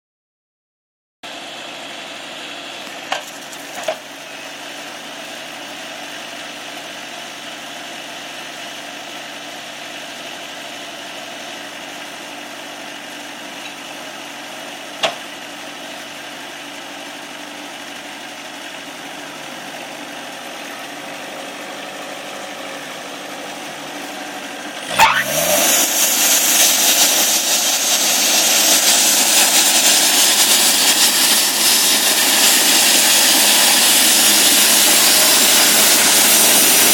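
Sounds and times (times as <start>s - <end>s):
sawmill engine running: 1.3s - 36.9s.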